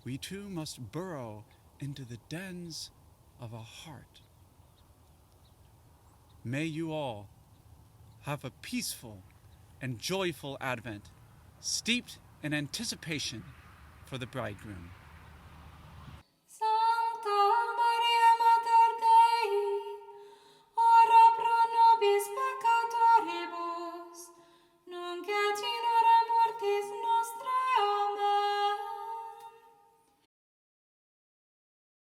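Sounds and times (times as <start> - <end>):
woman singing: 16.5 - 20.2, 20.8 - 29.7.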